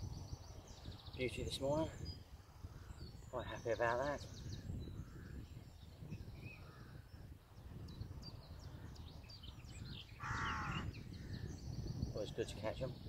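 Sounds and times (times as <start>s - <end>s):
small birds chirping: 0.0s - 13.0s
wind rumbling on microphone: 0.0s - 13.0s
loud animal call: 10.2s - 10.9s.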